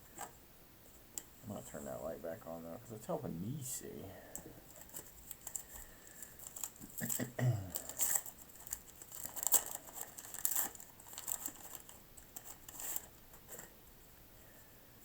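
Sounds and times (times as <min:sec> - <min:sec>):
wax paper wrapper crinkling: 0:04.6 - 0:13.7.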